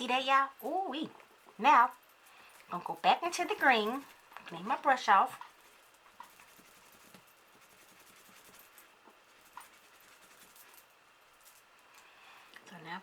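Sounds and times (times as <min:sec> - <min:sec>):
makeup brush scratching: 0:02.6 - 0:10.8.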